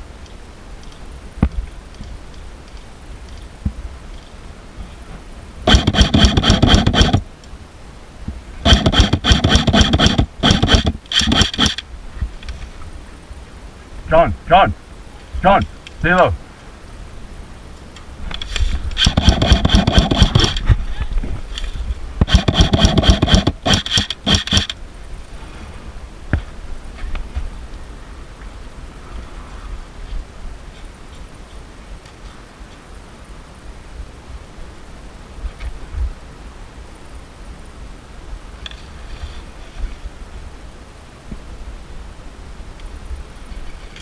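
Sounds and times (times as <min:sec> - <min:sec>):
airsoft gun firing full auto: 0:05.7 - 0:07.2, 0:08.6 - 0:11.8, 0:19.0 - 0:20.6, 0:22.2 - 0:24.8
sharp click: 0:08.7 - 0:11.8, 0:21.6 - 0:24.8
rustling through dry brush: 0:14.8 - 0:33.0.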